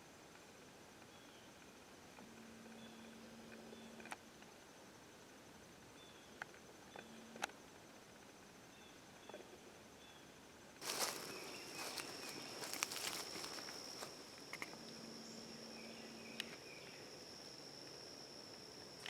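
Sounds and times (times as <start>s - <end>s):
insects droning: 0.0s - 19.0s
footsteps in dry leaves: 10.8s - 14.2s.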